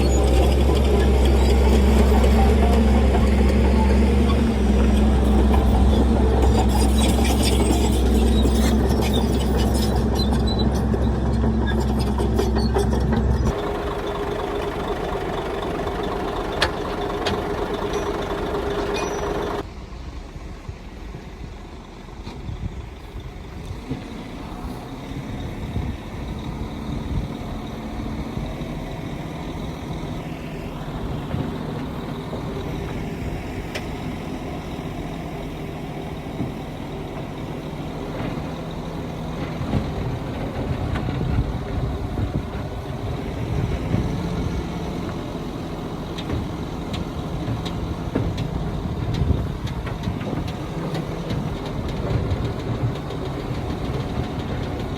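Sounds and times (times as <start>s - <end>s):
heavy machine diesel engines: 0.0s - 54.9s.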